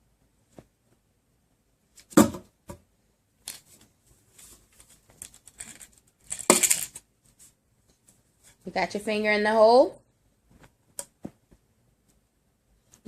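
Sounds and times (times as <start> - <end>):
rustling and knocking handling noise: 3.5 - 8.6, 10.4 - 12.2.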